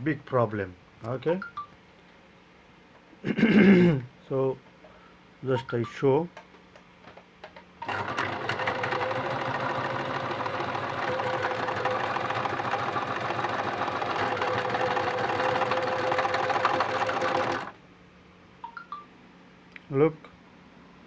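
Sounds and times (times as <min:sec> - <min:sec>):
sewing machine running: 0:07.8 - 0:17.8.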